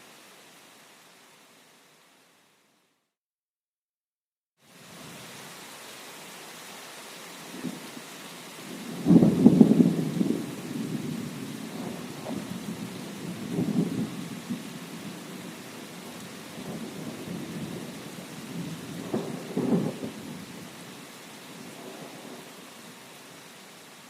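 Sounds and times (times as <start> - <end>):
steady rain: 0.0 - 3.2, 4.6 - 24.0
light thunder rumbling: 8.6 - 22.5.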